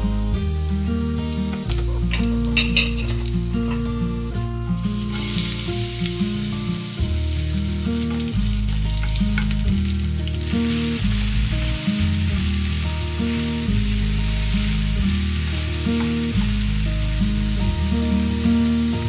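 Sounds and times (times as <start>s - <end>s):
background music with bass: 0.0s - 19.0s
food frying in hot oil: 4.8s - 19.0s.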